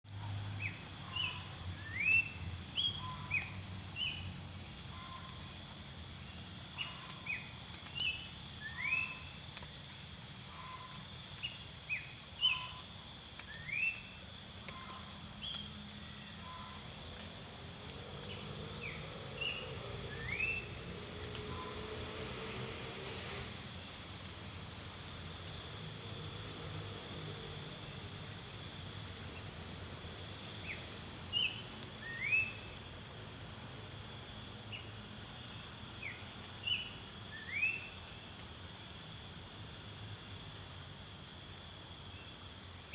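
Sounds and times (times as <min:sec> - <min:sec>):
insects droning: 0:00.1 - 0:42.9.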